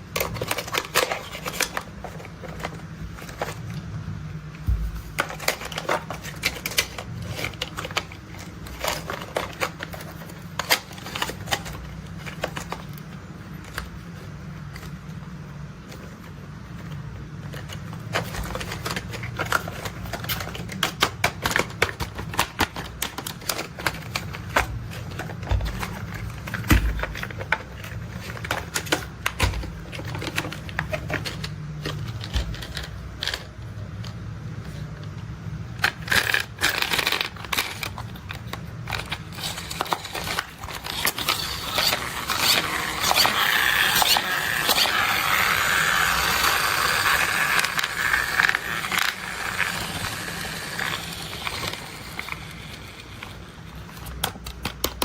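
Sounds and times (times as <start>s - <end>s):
steady low hum: 0.0s - 20.8s
plastic toy vehicles clicking: 16.8s - 34.2s, 35.8s - 55.0s.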